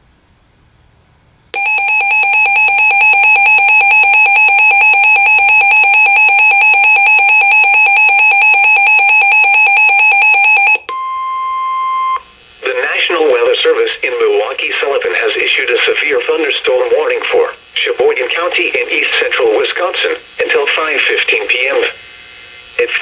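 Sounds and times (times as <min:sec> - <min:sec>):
rapid alarm beeping: 0:01.6 - 0:10.9
steady alarm tone: 0:01.6 - 0:12.2.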